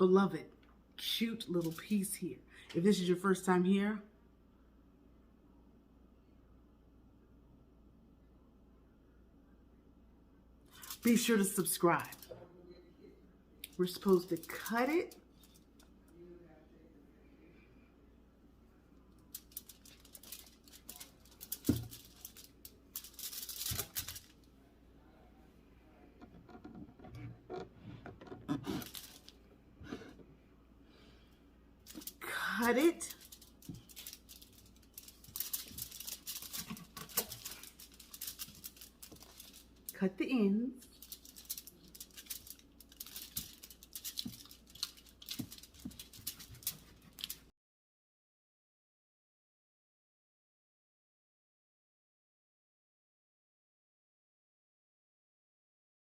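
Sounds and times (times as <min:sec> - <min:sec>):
hands rustling and clicking on a table: 0:26.2 - 0:30.3, 0:33.0 - 0:39.9, 0:40.8 - 0:47.5.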